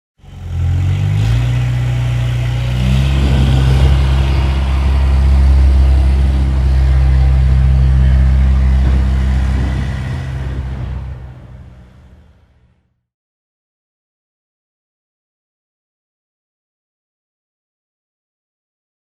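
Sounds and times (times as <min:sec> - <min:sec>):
tractor engine running: 0:00.2 - 0:12.8.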